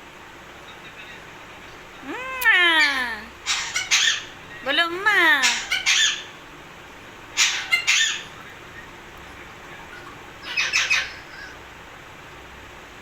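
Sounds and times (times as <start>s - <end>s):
parrot squawking: 1.9s - 6.4s, 7.3s - 11.7s.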